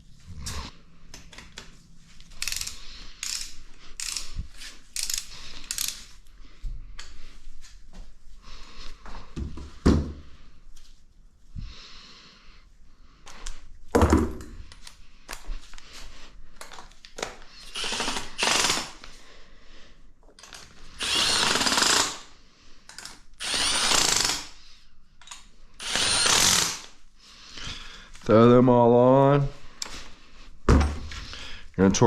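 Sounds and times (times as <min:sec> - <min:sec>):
power tool spinning nuts: 0:17.6 - 0:19.1, 0:20.4 - 0:22.3, 0:22.9 - 0:24.6, 0:25.8 - 0:27.0.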